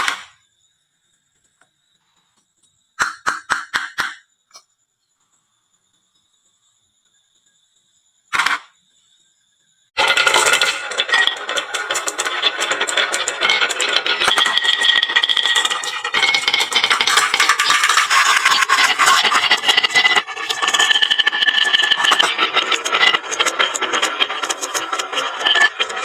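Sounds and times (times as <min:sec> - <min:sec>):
marbles rattling down wooden run: 0:10.0 - 0:26.0.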